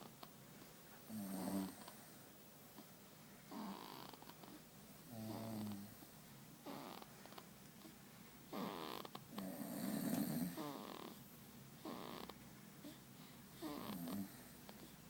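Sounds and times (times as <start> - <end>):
baby snoring: 1.1 - 1.9, 3.5 - 6.0, 6.6 - 11.2, 11.8 - 13.0, 13.6 - 14.9.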